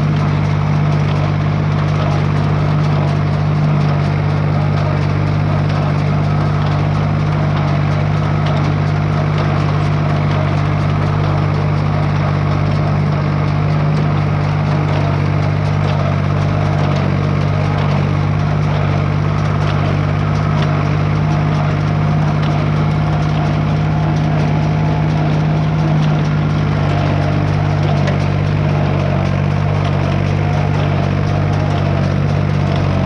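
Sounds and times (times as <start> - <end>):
hay baler clattering and ticking: 0.0 - 33.0
tractor engine humming: 0.0 - 33.0.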